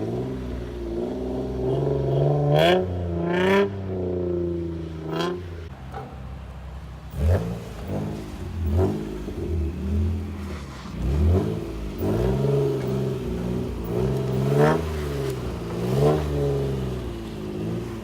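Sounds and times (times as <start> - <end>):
car engine revving: 0.0 - 6.0, 7.1 - 18.0
exhaust cracks: 7.1 - 18.0.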